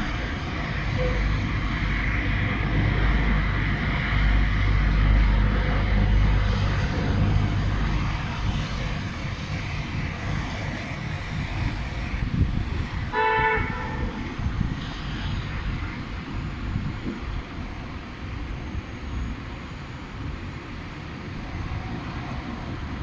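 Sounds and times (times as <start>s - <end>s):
traffic hiss: 0.0s - 23.0s
vehicle rumble: 0.0s - 23.0s
car horn honk: 13.1s - 14.3s.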